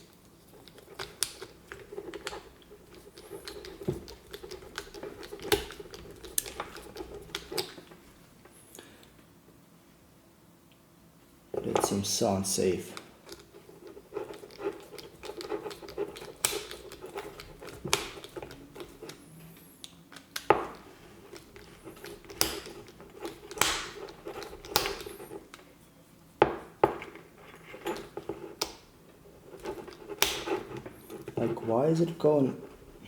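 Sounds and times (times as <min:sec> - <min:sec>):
small parts clicking and tapping: 0:00.0 - 0:08.0, 0:13.0 - 0:25.7.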